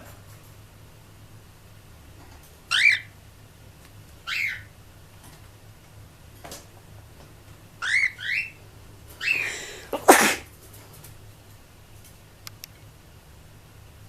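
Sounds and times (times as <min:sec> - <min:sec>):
high-pitched sneezes: 0:09.4 - 0:10.5.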